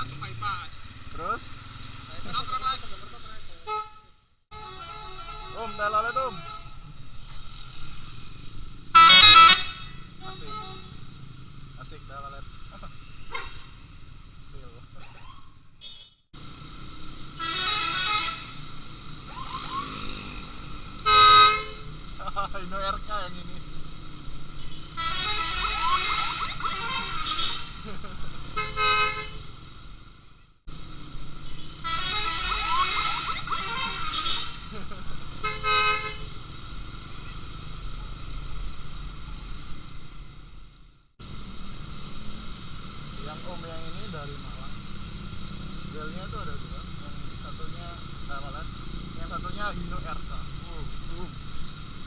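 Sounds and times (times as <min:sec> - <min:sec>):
traffic rumble: 0:00.0 - 0:52.0
multi-tone air horn blast: 0:03.6 - 0:06.8, 0:08.9 - 0:11.0, 0:17.3 - 0:18.7, 0:19.6 - 0:22.0, 0:24.8 - 0:27.8, 0:28.5 - 0:29.5, 0:31.7 - 0:34.7, 0:35.4 - 0:36.4.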